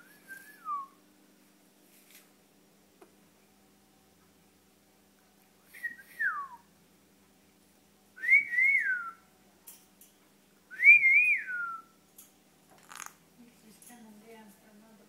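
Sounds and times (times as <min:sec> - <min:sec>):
whistled phrases: 0:00.0 - 0:01.0, 0:05.7 - 0:06.6, 0:08.2 - 0:09.2, 0:10.8 - 0:12.0.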